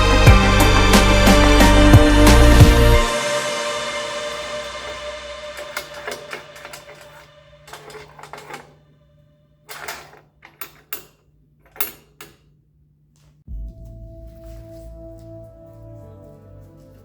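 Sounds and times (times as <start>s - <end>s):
metallic clatters and knocks: 0.8s - 9.0s, 9.6s - 12.6s.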